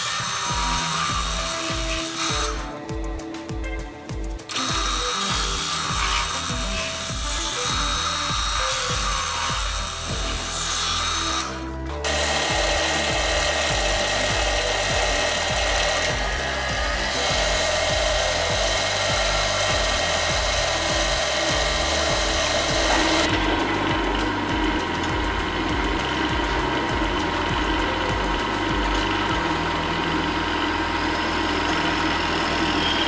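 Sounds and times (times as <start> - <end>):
background music: 0.0 - 33.0
power tool whining: 0.0 - 33.0.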